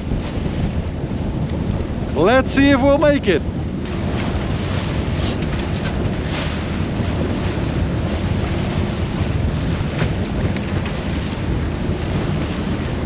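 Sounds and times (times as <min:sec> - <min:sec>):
waves rushing: 0:00.0 - 0:13.0
wind buffeting microphone: 0:00.0 - 0:13.0.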